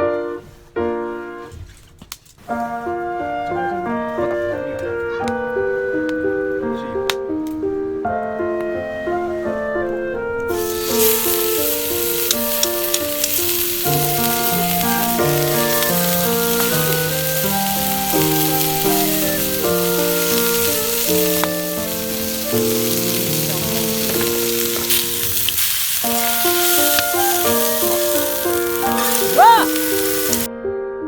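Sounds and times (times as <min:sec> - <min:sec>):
slow background music: 0:00.0 - 0:30.6
food sizzling in a pan: 0:10.5 - 0:30.5.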